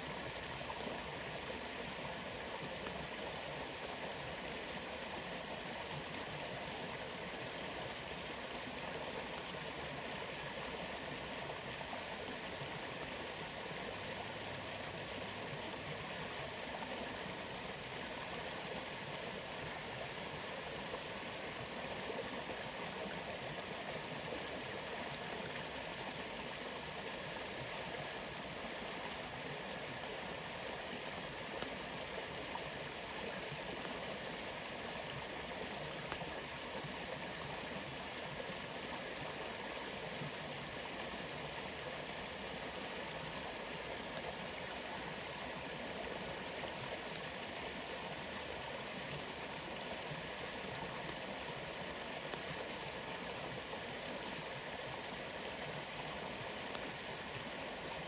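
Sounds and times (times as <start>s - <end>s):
faint ticks: 31.4s - 31.8s, 36.0s - 36.4s, 56.7s - 56.9s.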